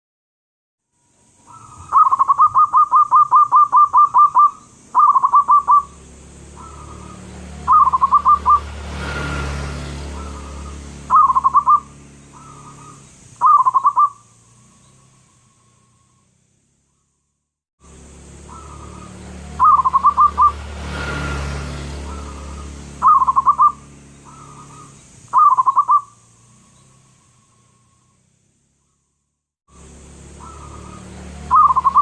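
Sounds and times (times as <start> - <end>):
dove cooing: 1.5 - 8.7, 10.1 - 14.2, 18.5 - 20.6, 22.0 - 26.2, 30.3 - 32.0.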